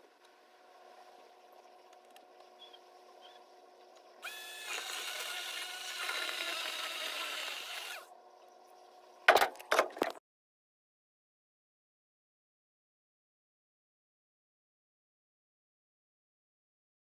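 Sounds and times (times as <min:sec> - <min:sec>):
power tool motor whining: 0:04.2 - 0:08.1.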